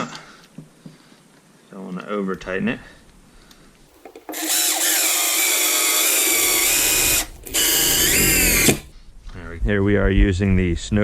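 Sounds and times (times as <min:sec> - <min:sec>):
power screwdriver running: 0:03.9 - 0:08.9.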